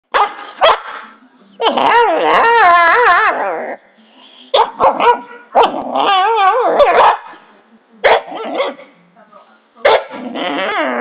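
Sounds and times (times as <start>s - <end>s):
dog barking: 0.1s - 1.0s, 4.5s - 5.8s, 6.8s - 7.4s, 8.0s - 8.8s, 9.8s - 10.2s
dog wobbling cry: 1.6s - 3.8s, 4.6s - 7.2s, 9.9s - 11.0s.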